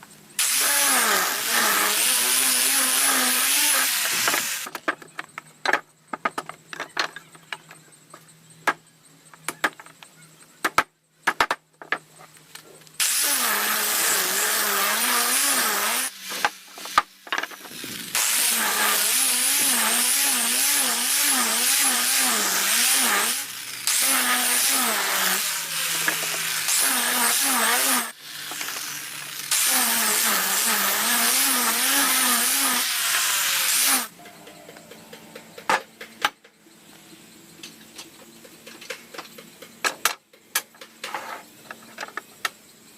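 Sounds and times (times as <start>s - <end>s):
power tool on wood: 0.4s - 4.7s, 13.0s - 34.2s.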